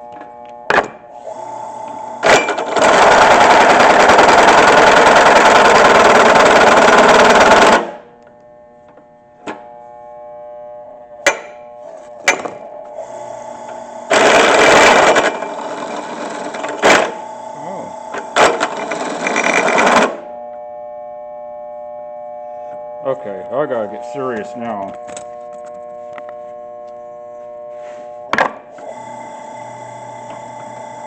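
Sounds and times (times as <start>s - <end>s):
drill press humming: 1.2s - 8.0s, 12.3s - 20.4s, 28.7s - 31.0s.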